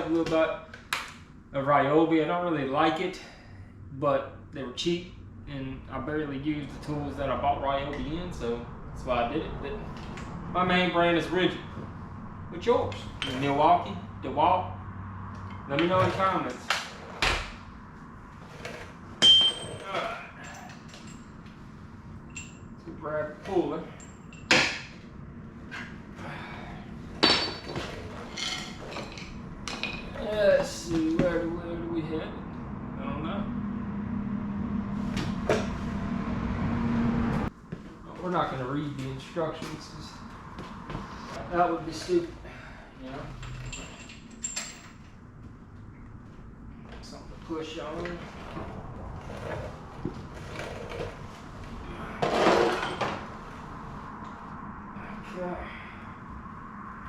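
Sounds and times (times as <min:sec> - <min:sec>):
metal tools knocking together: 0:19.2 - 0:21.2, 0:27.2 - 0:30.2
ringing metallic clank: 0:19.2 - 0:21.3, 0:27.2 - 0:30.2
metallic clattering and scraping: 0:27.0 - 0:31.2, 0:43.1 - 0:45.2, 0:47.0 - 0:54.2.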